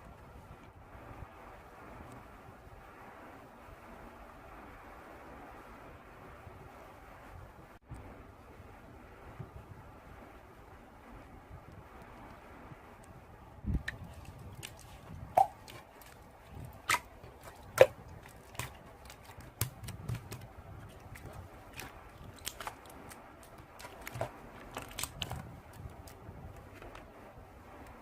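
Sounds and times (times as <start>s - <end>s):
slime squeezed by hand: 13.9s - 22.9s.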